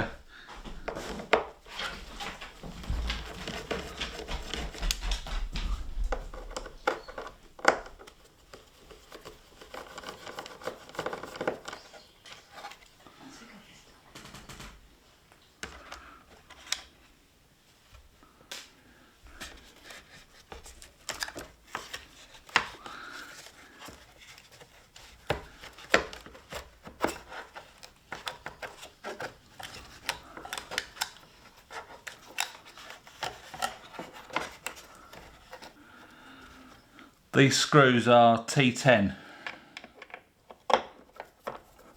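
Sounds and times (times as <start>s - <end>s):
metal and plastic parts handled: 5.8s - 13.0s, 19.4s - 36.9s, 39.4s - 41.9s.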